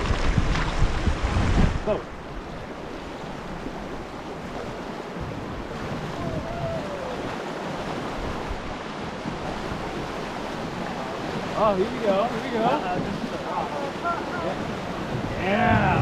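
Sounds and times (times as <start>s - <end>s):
river water rushing through rapids: 0.0s - 16.0s
faint distant voice calling: 6.0s - 7.4s.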